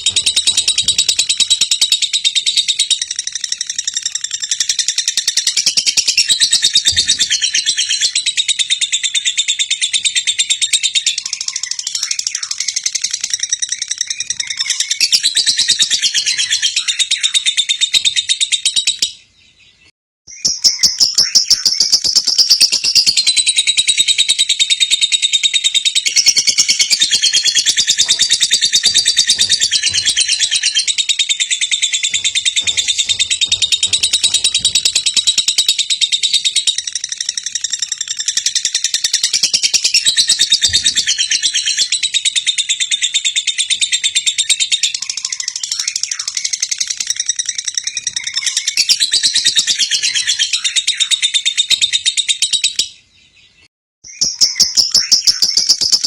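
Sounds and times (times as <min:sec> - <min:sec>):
lovebird fast high chattering: 0:00.0 - 0:08.4, 0:20.8 - 0:42.3.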